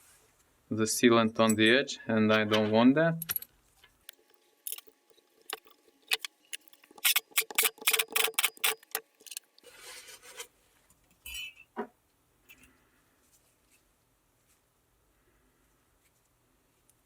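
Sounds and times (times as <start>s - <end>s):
metal tools clicking and tapping: 4.1s - 9.5s
rubbing scrape: 9.6s - 10.6s.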